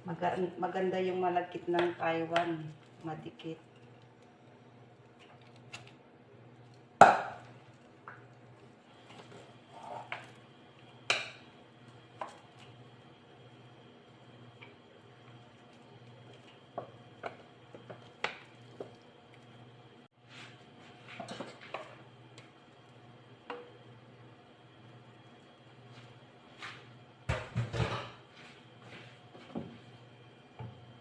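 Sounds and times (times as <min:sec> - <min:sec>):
utensil scraping cooking pot: 0:09.0 - 0:10.3.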